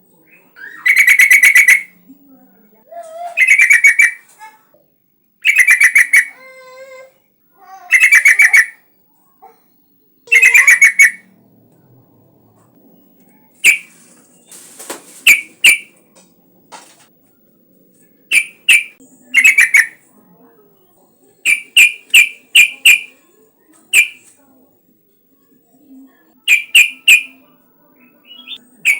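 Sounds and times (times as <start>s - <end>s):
bird sharp single calls: 18.3s - 19.9s, 24.0s - 24.3s
bulbul bubbling song: 18.3s - 20.0s, 21.4s - 23.1s, 23.9s - 24.2s, 26.5s - 27.4s, 28.0s - 28.9s.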